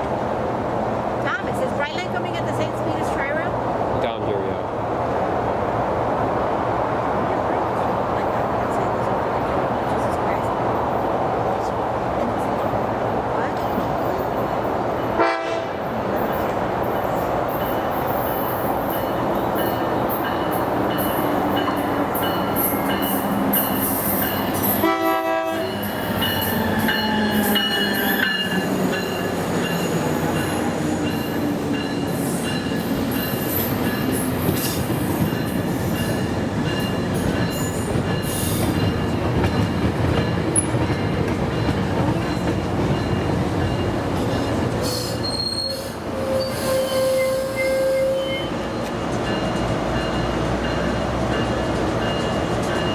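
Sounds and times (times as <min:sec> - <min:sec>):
train wheels rushing on rail: 0:00.0 - 0:52.9
short train horn toot: 0:15.2 - 0:15.8, 0:24.8 - 0:25.8, 0:44.8 - 0:48.5
high wheel squeal: 0:44.8 - 0:48.6.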